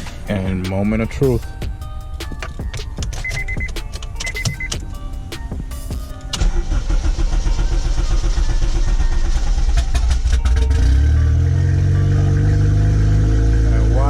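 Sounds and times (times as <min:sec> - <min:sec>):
starter clicks: 0:02.4 - 0:04.8
car engine starting and revving: 0:04.4 - 0:14.0.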